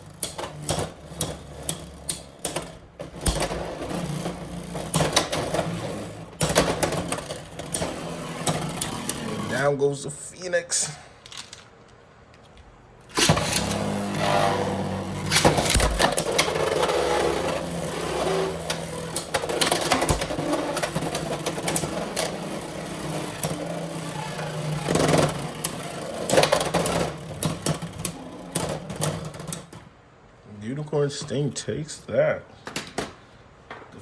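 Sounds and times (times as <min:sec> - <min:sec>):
spinning tops whirring: 0:00.0 - 0:09.7, 0:13.0 - 0:29.8.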